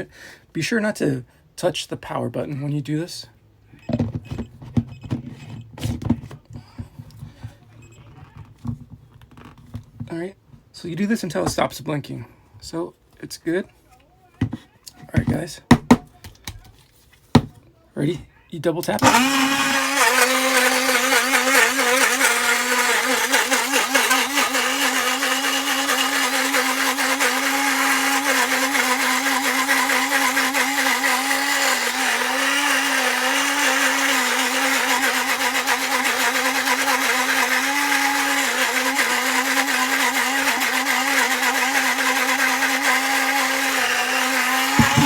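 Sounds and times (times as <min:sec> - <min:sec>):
blender motor hum: 0:19.0 - 0:45.0.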